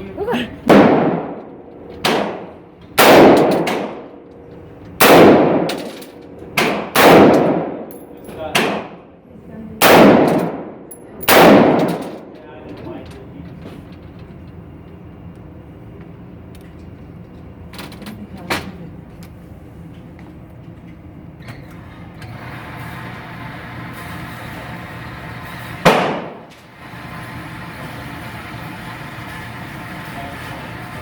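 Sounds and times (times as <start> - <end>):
rifle shots with ringing echo: 0.7 - 1.4, 2.0 - 4.2, 5.0 - 6.0, 6.6 - 7.9, 8.6 - 9.1, 9.8 - 12.3, 25.8 - 26.5.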